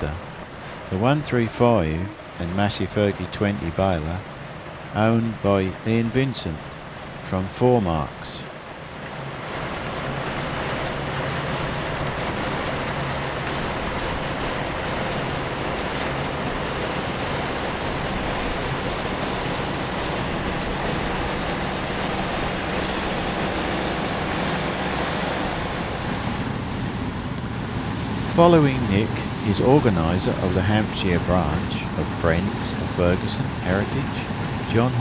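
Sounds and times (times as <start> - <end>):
constant rushing noise: 0.0 - 35.0
farm machinery engines running: 0.0 - 35.0.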